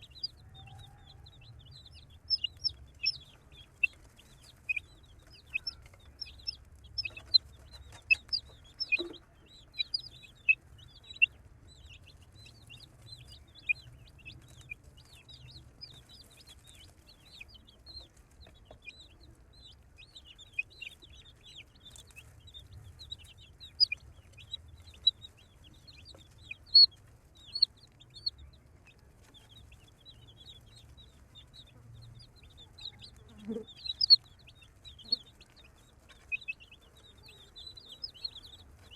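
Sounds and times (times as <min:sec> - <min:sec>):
baby chicks peeping: 0:00.0 - 0:38.9.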